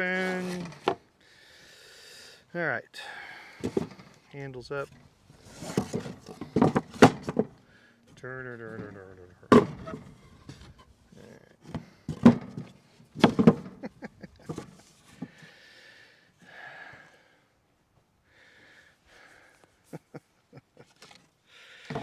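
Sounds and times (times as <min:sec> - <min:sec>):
wooden parts knocking: 0:03.6 - 0:04.2, 0:04.9 - 0:07.6, 0:08.7 - 0:10.9, 0:11.7 - 0:14.8.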